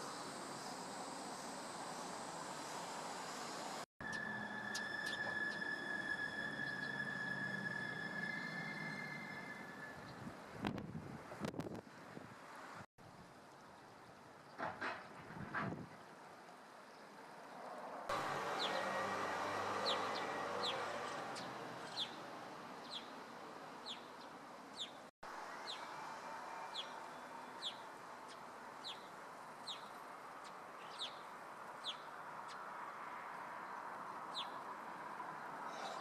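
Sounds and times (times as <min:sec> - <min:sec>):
starlings chirping: 0:04.0 - 0:10.3, 0:18.5 - 0:23.2, 0:23.8 - 0:26.0, 0:26.7 - 0:32.6, 0:34.1 - 0:34.7.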